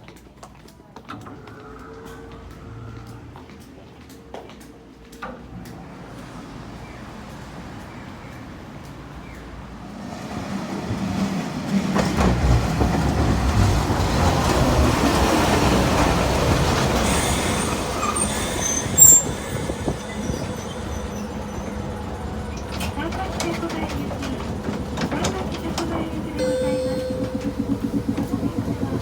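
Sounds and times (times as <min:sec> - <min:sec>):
streetcar running on rails: 0:00.0 - 0:29.0
wheel squeal: 0:16.6 - 0:23.0.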